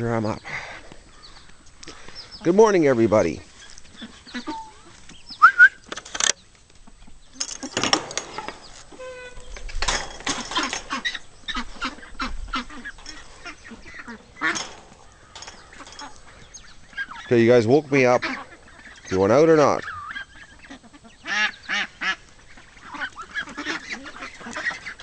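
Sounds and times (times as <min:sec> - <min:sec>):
ducks quacking: 0:00.5 - 0:05.4, 0:10.3 - 0:25.0.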